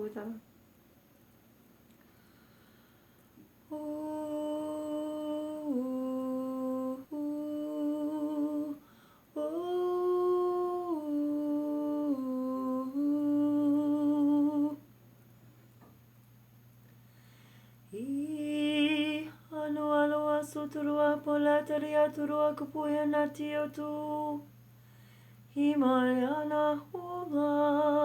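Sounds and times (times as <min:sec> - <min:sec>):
person humming a slow melody: 0:03.7 - 0:14.8.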